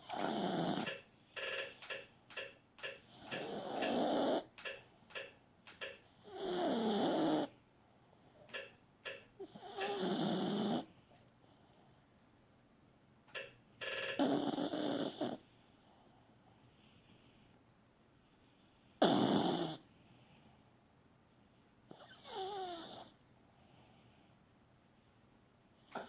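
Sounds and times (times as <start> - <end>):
dog snoring: 0.0 - 1.8, 3.0 - 5.3, 6.0 - 7.6, 9.4 - 10.9, 14.2 - 16.0, 19.0 - 19.8, 21.9 - 23.9.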